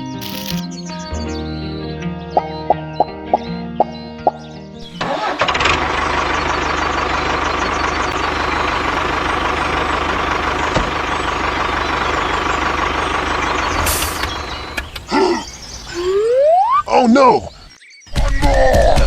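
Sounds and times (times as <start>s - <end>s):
small machine motor humming: 0.2s - 0.6s.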